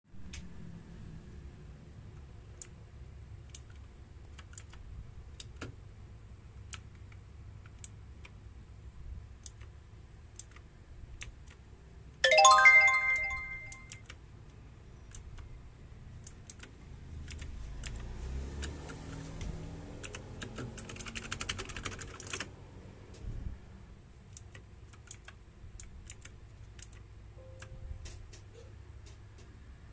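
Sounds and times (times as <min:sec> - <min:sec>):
mechanical keyboard keys clicking: 0:03.4 - 0:04.8, 0:10.3 - 0:11.6, 0:20.0 - 0:22.5, 0:24.3 - 0:28.5
bell-like chime: 0:12.2 - 0:14.0.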